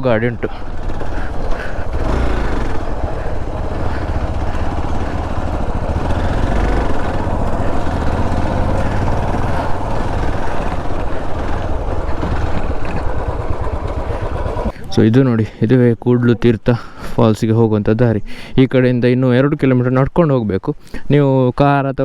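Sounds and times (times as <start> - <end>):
motorcycle engine running: 0.0 - 15.1
road and wind noise: 0.0 - 15.3.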